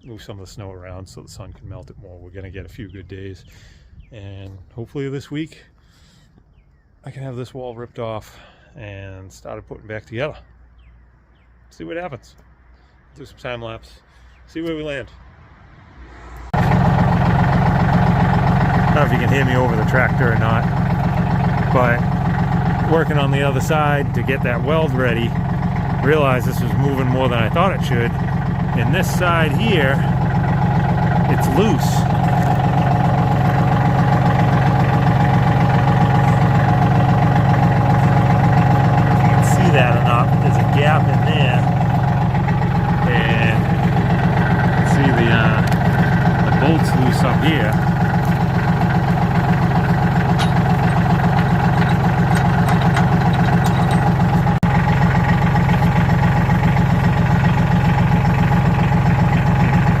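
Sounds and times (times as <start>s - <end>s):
backhoe engine idling: 16.5s - 60.0s.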